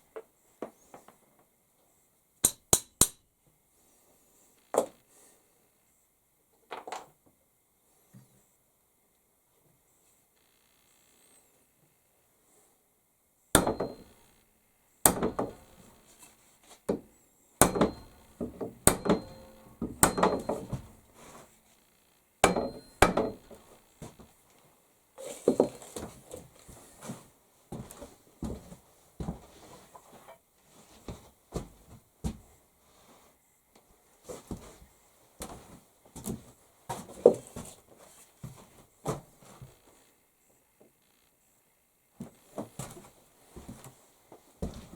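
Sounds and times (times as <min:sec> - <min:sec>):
hammer striking metal and wood: 0:02.4 - 0:03.2, 0:13.6 - 0:14.3, 0:15.0 - 0:16.0, 0:17.6 - 0:21.0, 0:22.4 - 0:23.8
metallic ring: 0:17.7 - 0:20.9, 0:22.4 - 0:23.6.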